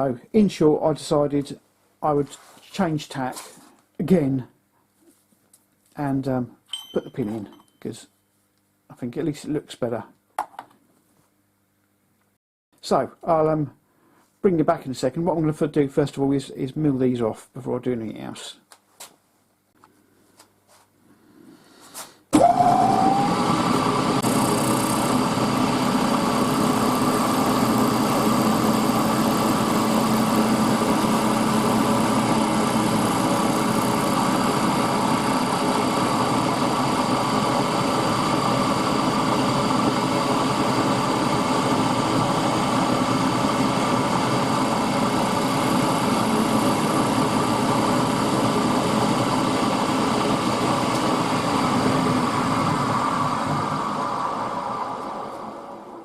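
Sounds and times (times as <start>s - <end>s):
milling machine whining: 22.3s - 56.0s.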